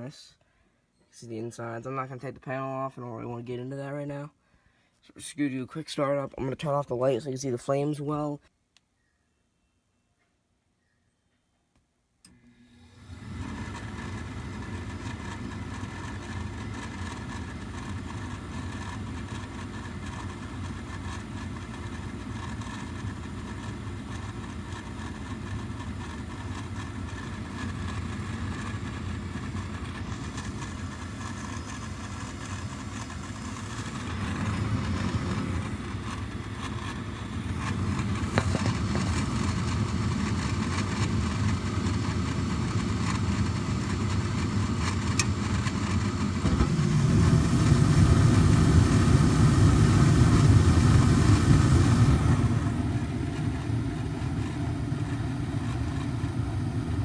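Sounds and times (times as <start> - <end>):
furnace burners lighting: 12.3 - 57.0
furnace inducer motor humming: 12.3 - 57.0.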